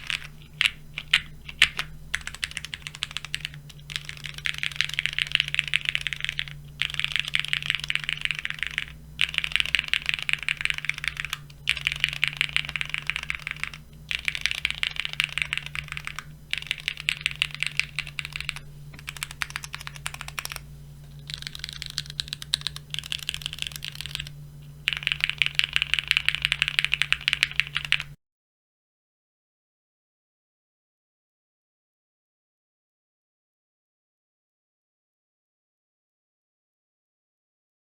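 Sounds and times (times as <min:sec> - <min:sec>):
mechanical keyboard typing: 0:00.0 - 0:28.2
steady low hum: 0:00.0 - 0:28.2.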